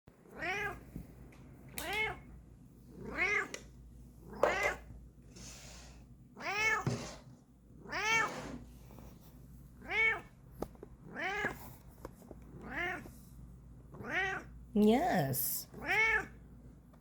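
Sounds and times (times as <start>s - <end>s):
cat meowing: 0.3s - 0.8s, 3.0s - 3.5s, 6.4s - 7.0s, 15.8s - 16.3s.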